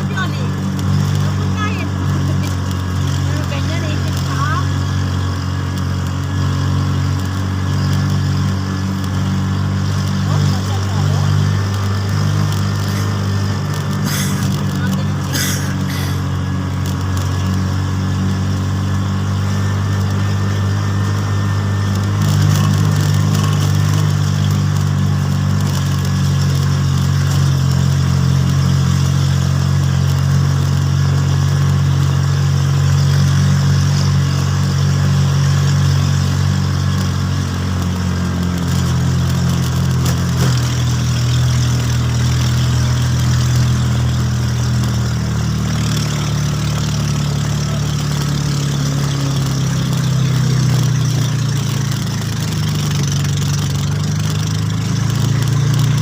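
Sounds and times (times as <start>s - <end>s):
vehicle engine running: 0.0s - 56.0s.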